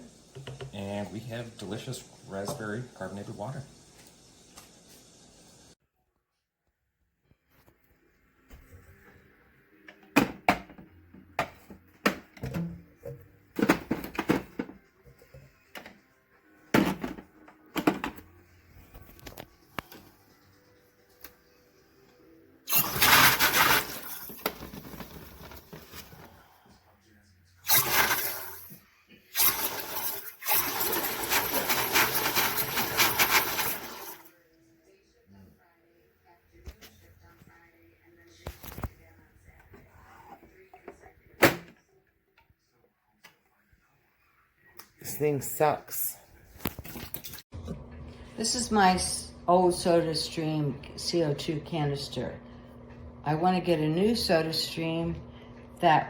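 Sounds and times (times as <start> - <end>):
gas hissing into bottle: 22.7 - 24.2.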